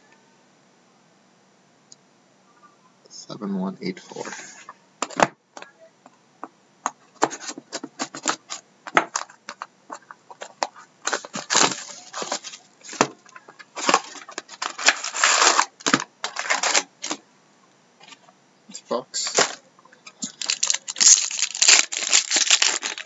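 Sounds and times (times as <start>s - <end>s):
plastic wrap crinkling and tearing: 10.4s - 17.2s, 19.2s - 19.6s, 20.2s - 23.0s
quick clicks and crackles: 19.2s - 23.0s.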